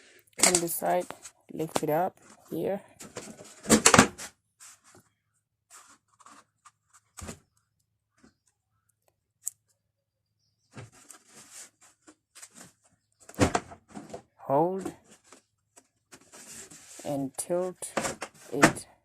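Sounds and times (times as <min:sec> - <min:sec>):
plastic parts clicking and rustling: 0:00.4 - 0:01.4
plastic cover clattering: 0:03.0 - 0:04.3.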